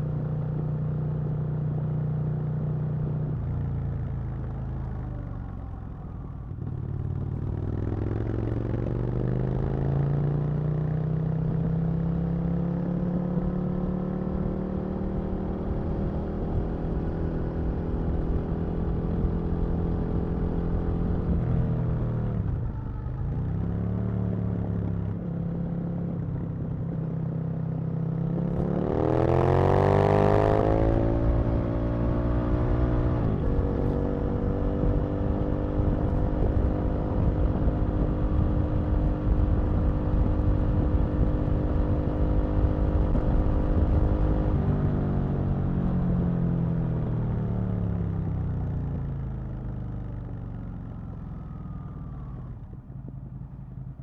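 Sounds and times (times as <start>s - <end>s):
motorcycle engine revving: 27.8s - 50.9s.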